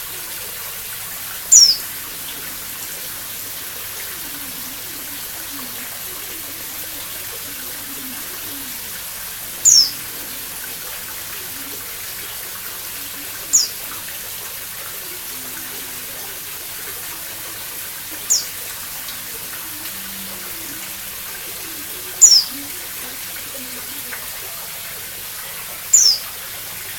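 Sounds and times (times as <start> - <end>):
steady hiss: 0.0 - 26.9
bird giving high falling calls: 1.5 - 1.8, 9.6 - 10.5, 13.4 - 13.8, 18.2 - 24.9, 25.9 - 26.3.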